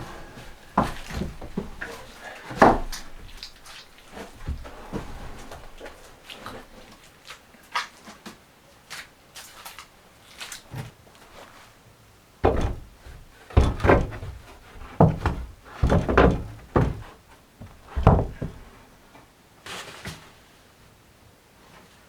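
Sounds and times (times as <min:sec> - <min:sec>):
heavy knocks and thumps: 0:00.0 - 0:03.6, 0:04.2 - 0:06.0, 0:12.4 - 0:18.8.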